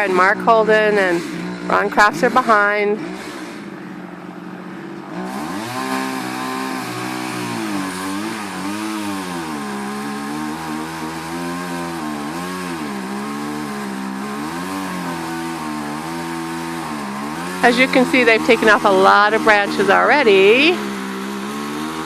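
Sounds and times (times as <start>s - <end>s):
chainsaw cutting tree trunk: 0.0s - 22.0s.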